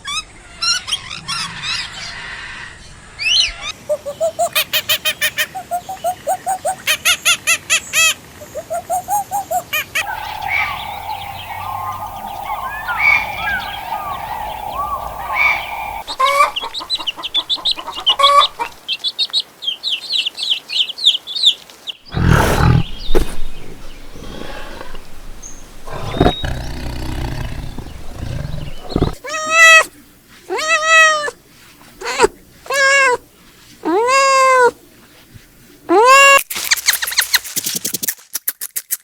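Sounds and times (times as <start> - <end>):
loud low animal call: 10.0 - 18.7, 22.1 - 29.9
chickens clucking: 10.0 - 18.8
cat meowing: 28.4 - 29.9, 30.5 - 31.4, 32.0 - 33.2, 33.8 - 34.8.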